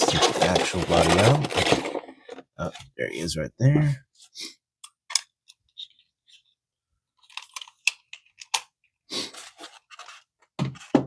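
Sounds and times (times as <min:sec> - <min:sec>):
packaging crinkling and rustling: 0:00.0 - 0:02.4.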